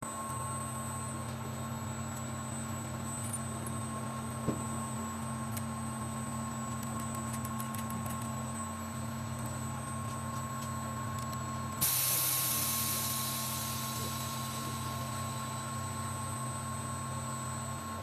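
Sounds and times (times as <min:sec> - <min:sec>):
machine hum with high whine: 0:00.0 - 0:18.0.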